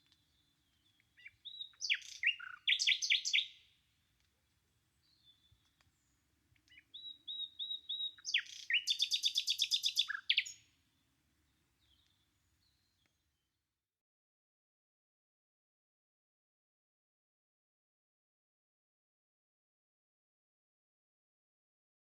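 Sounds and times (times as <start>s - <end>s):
nightingale singing: 0.0s - 3.7s, 5.0s - 10.7s.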